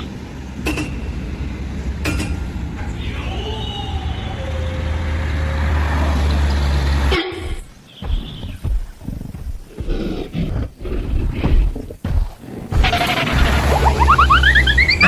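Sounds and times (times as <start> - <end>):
heavy vehicle engine rumbling: 0.0 - 7.2, 13.0 - 15.0.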